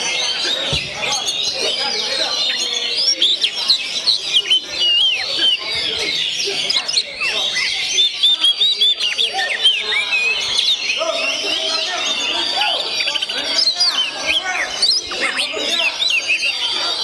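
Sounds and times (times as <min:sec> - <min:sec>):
songbird singing: 0:00.0 - 0:17.0.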